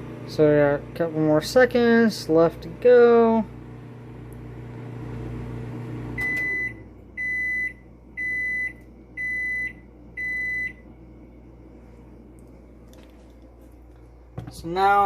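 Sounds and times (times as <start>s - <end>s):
microwave oven hum: 0.0s - 15.0s
high-pitched microwave beeps: 6.1s - 10.9s.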